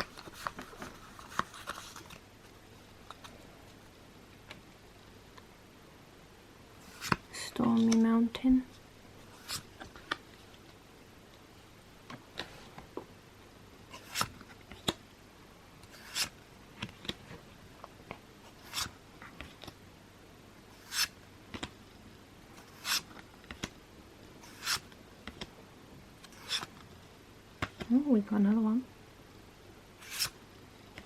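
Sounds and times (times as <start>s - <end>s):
trading cards swishing: 20.8s - 21.1s, 24.4s - 24.8s, 30.0s - 30.4s.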